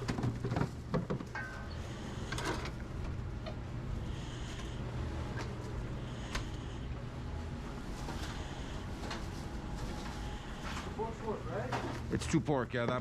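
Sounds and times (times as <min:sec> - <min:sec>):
kitchen equipment hum: 0:00.0 - 0:13.0.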